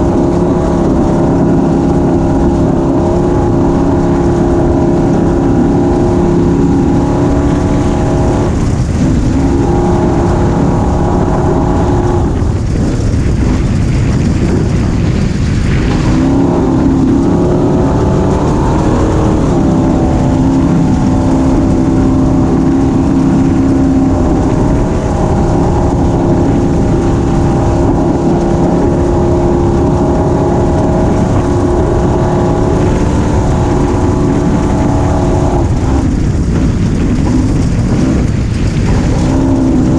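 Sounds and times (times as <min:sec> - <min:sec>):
wind rumble on microphone: 0:00.0 - 0:39.9.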